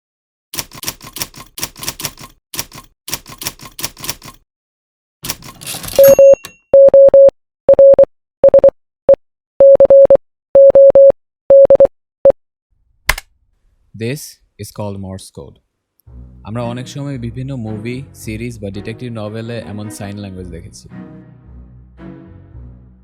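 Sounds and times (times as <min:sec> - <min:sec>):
morse code beeping: 0:05.6 - 0:08.7, 0:09.6 - 0:12.4.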